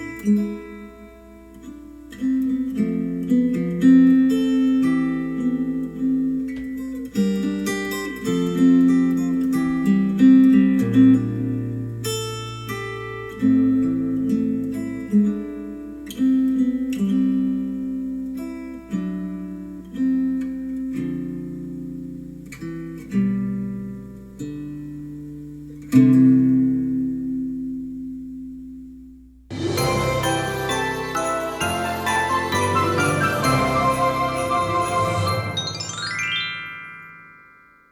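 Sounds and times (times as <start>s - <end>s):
acoustic guitar music: 0.0s - 37.9s.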